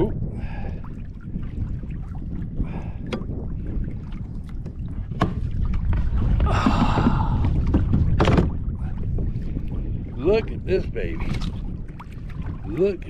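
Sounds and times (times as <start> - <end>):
sharp knocks in kayak: 4.6 - 8.7.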